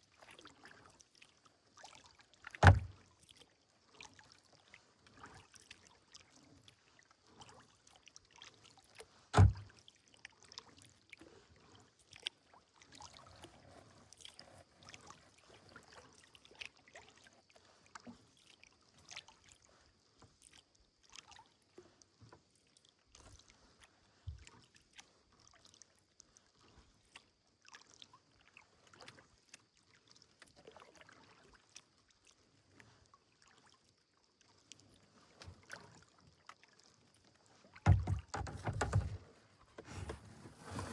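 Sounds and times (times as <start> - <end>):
paddle splashing water: 1.8 - 3.0, 8.3 - 9.8, 35.0 - 40.9
thump: 2.6 - 2.9, 9.4 - 9.6, 37.9 - 39.2.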